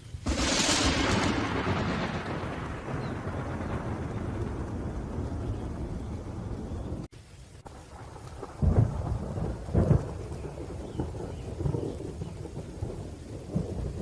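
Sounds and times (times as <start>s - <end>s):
rain: 0.0s - 14.0s
loud thunderclaps: 0.2s - 7.1s, 7.9s - 14.0s
low rolling thunder: 0.2s - 14.0s.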